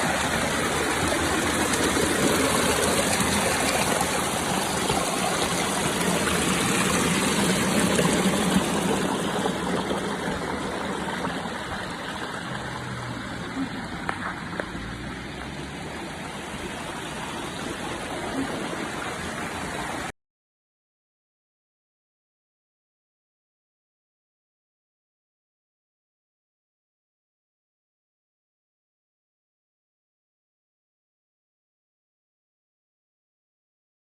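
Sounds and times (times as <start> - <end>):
running water rushing: 0.0 - 20.1.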